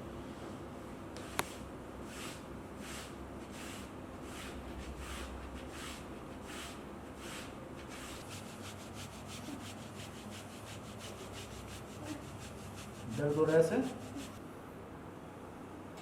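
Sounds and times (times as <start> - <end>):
hands rubbing over body: 7.3 - 14.4.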